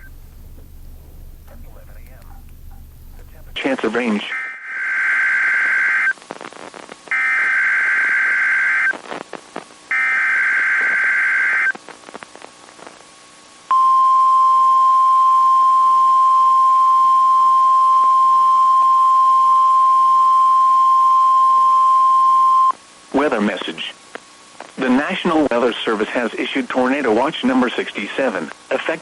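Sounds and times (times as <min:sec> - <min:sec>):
radio static: 0:00.0 - 0:04.5, 0:23.2 - 0:29.0.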